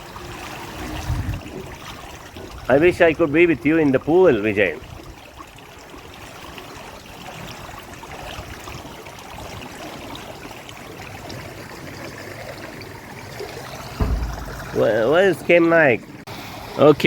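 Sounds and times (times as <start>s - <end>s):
pool water splashing: 0.0s - 16.9s.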